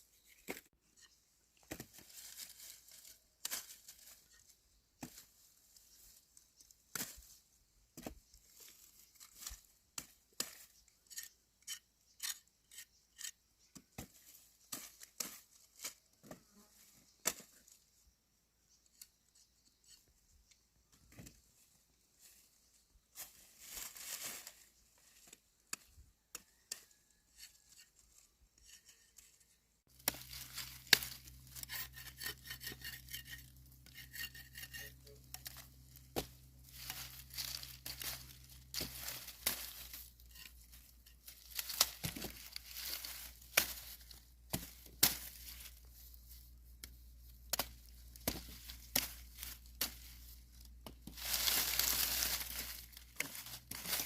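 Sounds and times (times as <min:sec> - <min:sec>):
tool clicking and scraping: 0:30.9 - 0:45.7.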